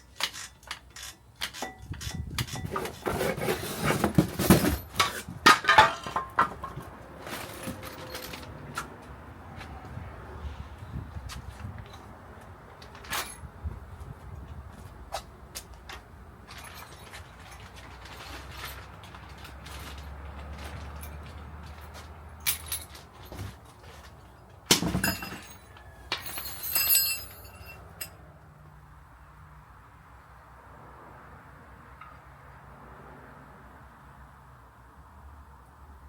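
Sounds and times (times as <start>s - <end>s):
clicks and metal clinks: 0.0s - 3.1s, 4.4s - 8.9s, 15.1s - 28.2s
metal clatter: 0.1s - 8.5s, 24.7s - 27.8s.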